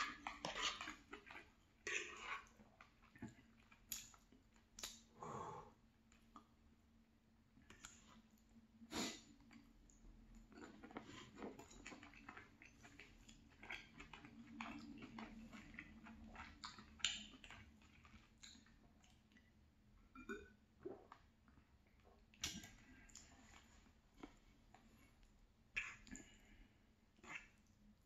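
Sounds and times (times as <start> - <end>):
chewing food: 0.0 - 5.1, 9.4 - 19.6
wet mouth clicks: 4.8 - 5.1, 25.8 - 26.3.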